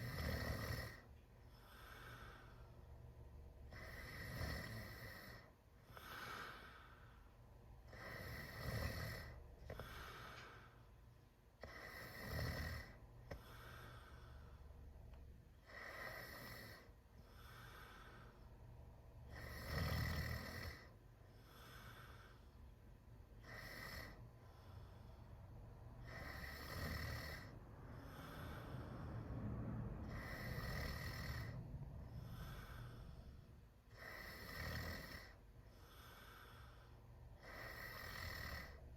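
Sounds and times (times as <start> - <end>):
person snoring: 0.0 - 1.1, 3.7 - 6.8, 7.9 - 10.4, 11.6 - 14.2, 15.6 - 18.2, 19.3 - 20.9, 23.4 - 24.2, 26.0 - 29.4, 30.0 - 36.8, 37.4 - 38.8
soft breathing: 0.0 - 19.6, 20.4 - 38.9.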